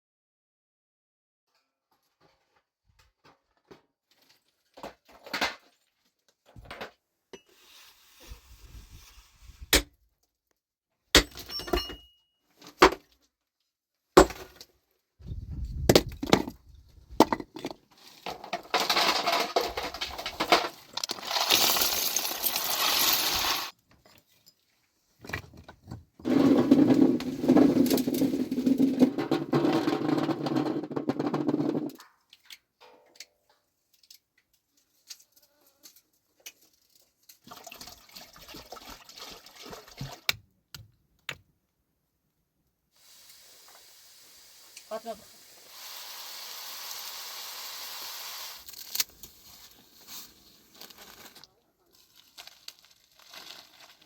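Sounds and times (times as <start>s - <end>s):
stone being struck and cracking: 14.2s - 14.6s.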